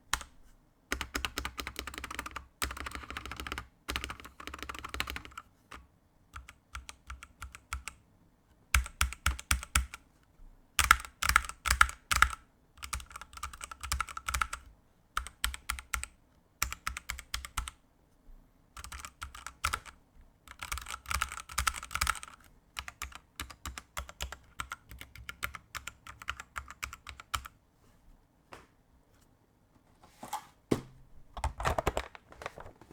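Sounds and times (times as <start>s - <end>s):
typing on mechanical keyboard: 0.9s - 5.8s, 6.4s - 8.0s, 8.8s - 10.0s, 10.8s - 17.8s, 18.8s - 27.6s.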